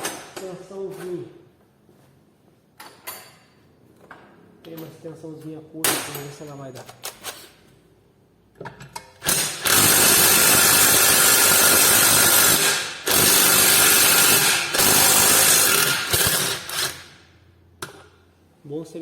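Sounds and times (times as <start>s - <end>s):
power wrench bursts: 9.2s - 17.2s.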